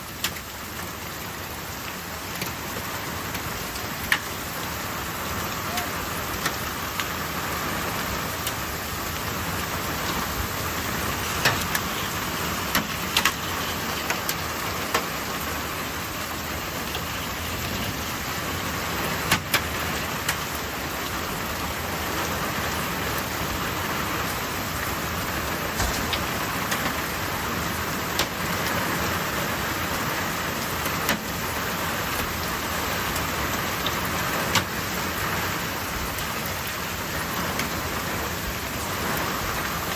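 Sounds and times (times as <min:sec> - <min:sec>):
heavy rain pouring: 0:00.0 - 0:39.9
sharp knocks: 0:25.8 - 0:27.0.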